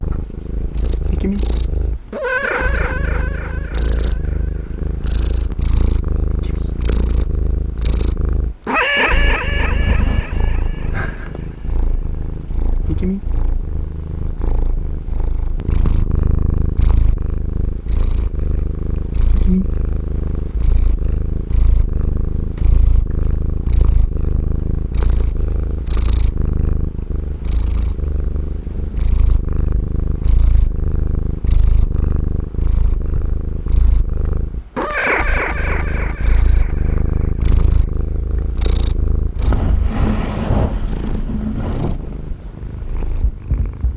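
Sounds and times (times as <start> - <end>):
cat purring loudly: 0.0 - 43.9
cat meow-like call: 2.1 - 4.5, 8.7 - 11.5, 34.8 - 36.9.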